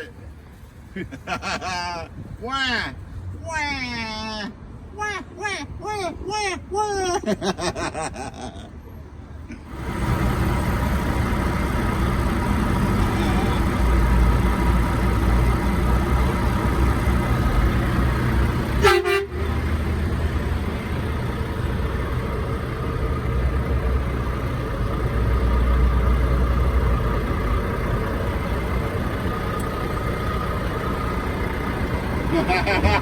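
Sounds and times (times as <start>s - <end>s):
engine rumbling: 0.0s - 33.0s
truck horn blast: 18.6s - 19.8s.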